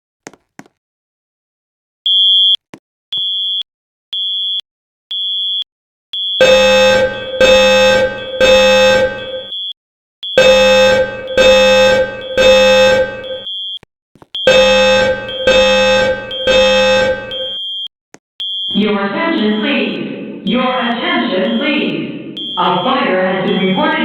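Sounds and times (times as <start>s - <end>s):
high-pitched alarm beep: 6.2s - 13.8s, 14.4s - 18.8s, 22.4s - 24.0s
buzzing alarm horn: 6.4s - 9.5s, 10.3s - 13.5s, 14.4s - 17.6s, 22.4s - 24.0s.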